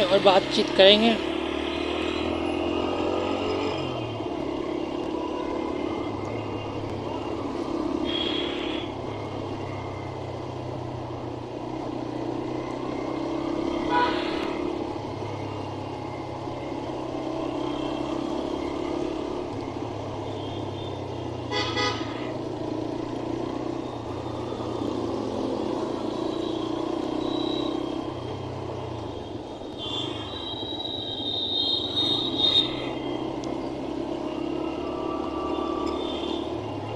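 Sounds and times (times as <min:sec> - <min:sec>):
vehicle engine and road noise: 0:00.0 - 0:36.9
car horns honking: 0:21.5 - 0:22.2.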